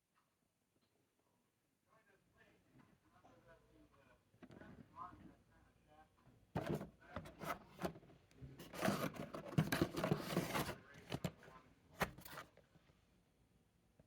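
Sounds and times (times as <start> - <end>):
packaging scraping and tearing: 8.6 - 11.3, 12.0 - 12.5.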